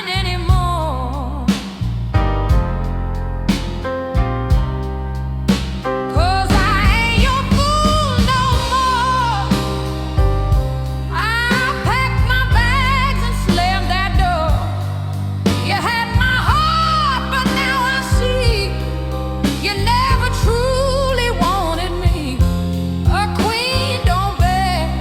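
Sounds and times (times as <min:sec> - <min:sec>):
blues band with bass: 0:00.0 - 0:25.0.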